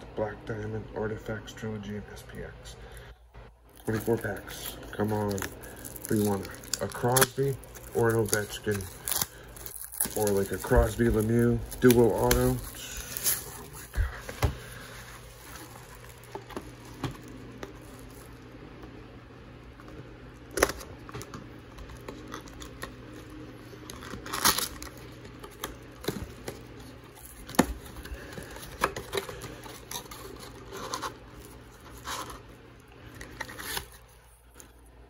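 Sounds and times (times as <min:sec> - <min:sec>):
cardboard and foil wrappers rustling: 0:03.8 - 0:18.4, 0:21.8 - 0:34.8.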